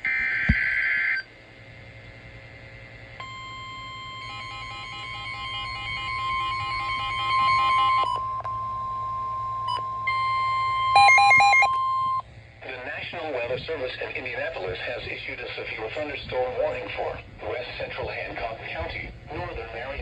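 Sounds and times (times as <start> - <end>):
fast alternating beeping alarm: 3.2 - 12.2.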